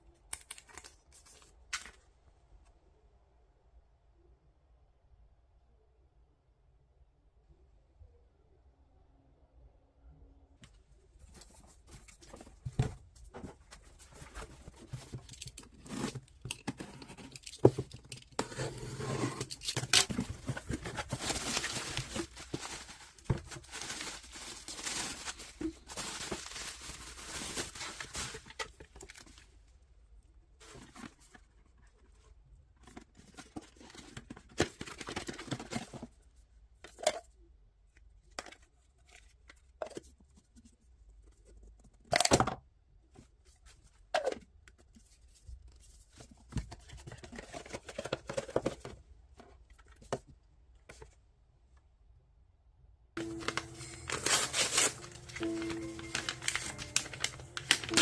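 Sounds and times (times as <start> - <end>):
packaging rustling and tearing: 14.1 - 29.4, 53.2 - 58.0
packaging clicks and knocks: 53.2 - 58.0.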